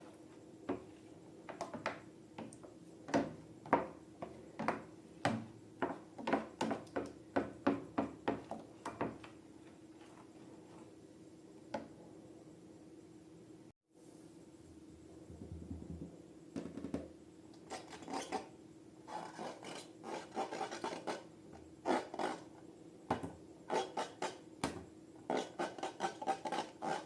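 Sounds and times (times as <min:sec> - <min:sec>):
steady low hum: 0:11.3 - 0:16.6.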